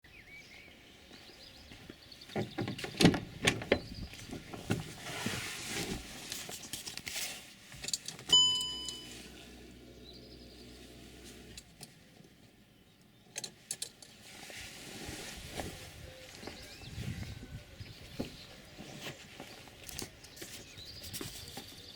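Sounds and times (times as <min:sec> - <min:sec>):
short electronic chime: 0:08.3 - 0:09.2.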